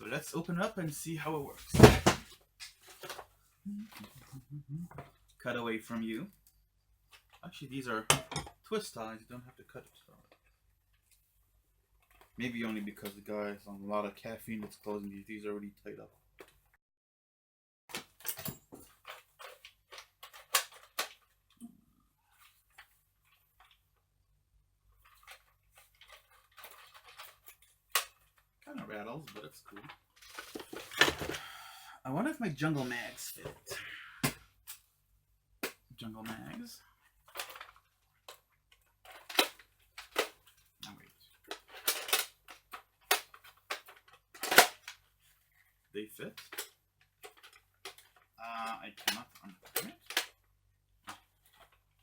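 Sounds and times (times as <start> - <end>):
plastic packaging rustling and clicking: 1.6 - 3.4, 17.9 - 21.6, 25.0 - 31.6, 35.6 - 45.5, 46.3 - 52.0.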